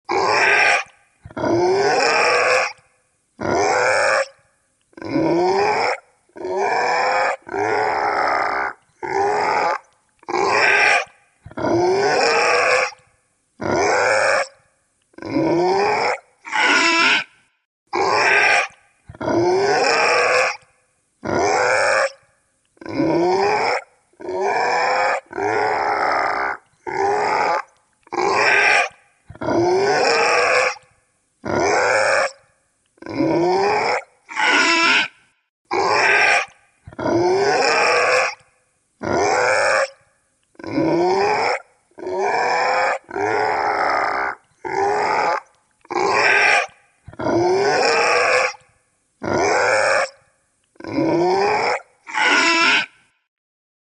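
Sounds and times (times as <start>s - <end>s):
creature grunts and snarls: 0.1s - 2.8s, 5.0s - 13.0s, 15.2s - 17.3s, 22.8s - 30.8s, 33.0s - 35.1s, 35.7s - 38.4s, 40.6s - 48.6s, 50.8s - 53.0s.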